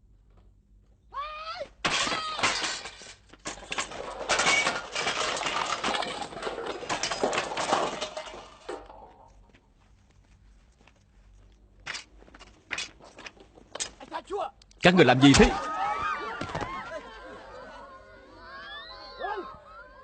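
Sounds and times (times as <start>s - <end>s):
dense crashing and smashing: 1.8s - 9.4s.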